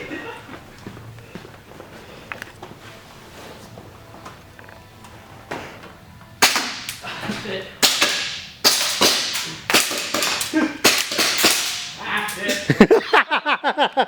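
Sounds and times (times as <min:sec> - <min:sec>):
airsoft guns firing: 0:06.4 - 0:12.9.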